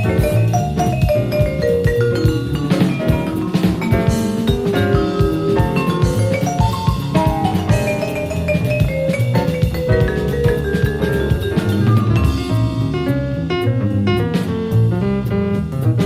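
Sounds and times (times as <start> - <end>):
vibraphone notes: 0.0 - 13.0
bass: 0.0 - 16.0
drum kit: 0.0 - 16.0.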